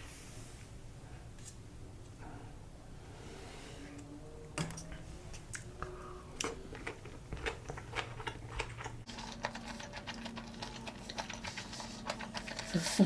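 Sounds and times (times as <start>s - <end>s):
person chewing food: 5.3s - 13.0s.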